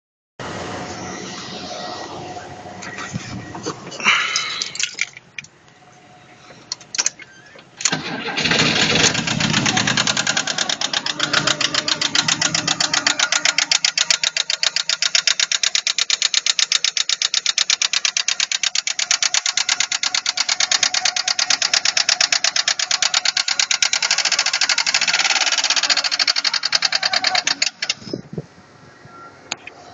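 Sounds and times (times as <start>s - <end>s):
car engine idling with knock: 8.3s - 27.9s.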